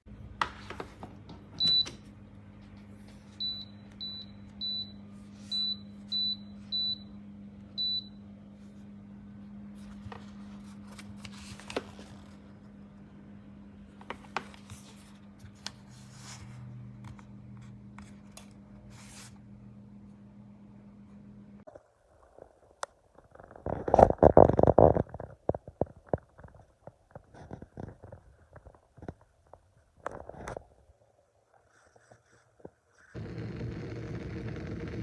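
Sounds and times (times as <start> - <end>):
steady low hum: 33.2 - 35.0.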